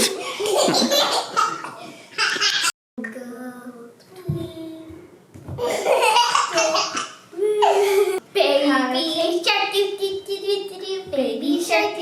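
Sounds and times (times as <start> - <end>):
children laughing: 0.0 - 2.7, 5.6 - 8.2.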